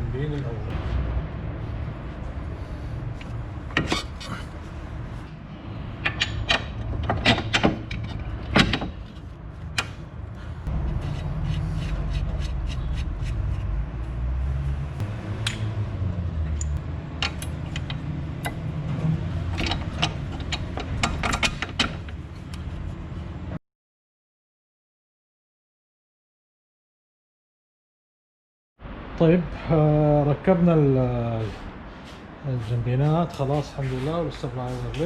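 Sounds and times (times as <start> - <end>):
low steady rumble: 0.0 - 23.6
metal parts clinking and knocking: 19.4 - 22.2.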